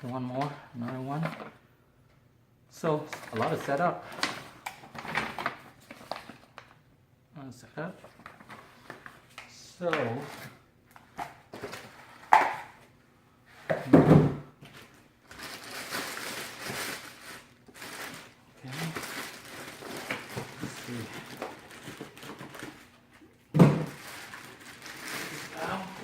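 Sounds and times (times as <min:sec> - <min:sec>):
packaging rustling: 0:03.1 - 0:06.7, 0:14.7 - 0:23.2, 0:23.8 - 0:26.0.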